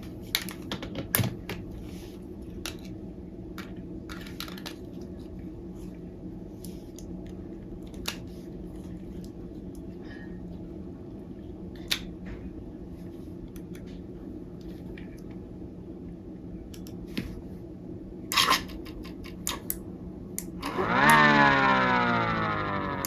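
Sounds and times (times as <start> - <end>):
faint steady hum: 0.0 - 23.0
air raid siren wailing: 20.6 - 23.0.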